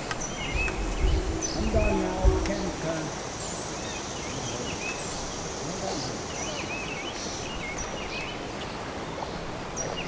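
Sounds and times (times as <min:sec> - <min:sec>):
outdoor hiss: 0:00.0 - 0:10.0
small birds chirping: 0:00.0 - 0:10.0.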